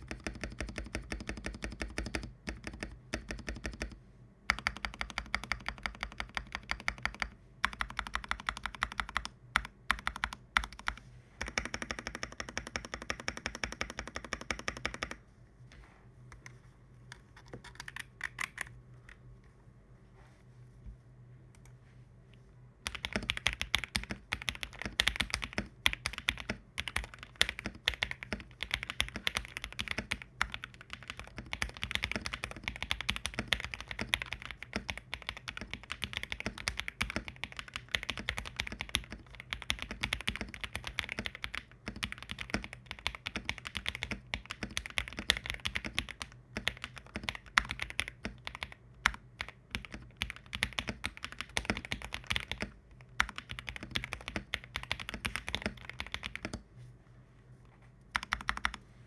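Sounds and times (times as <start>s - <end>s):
rapid typing on mechanical keyboard: 0.0s - 15.2s, 17.4s - 18.7s, 22.8s - 56.6s, 58.1s - 58.8s.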